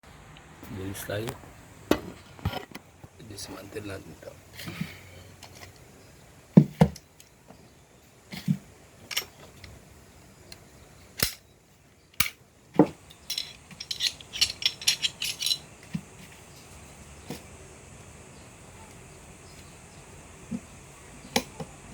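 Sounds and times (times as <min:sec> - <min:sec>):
pistol parts clicking: 0:11.2 - 0:11.4, 0:12.2 - 0:12.4, 0:13.0 - 0:15.6
light rattling clicks: 0:13.0 - 0:15.6.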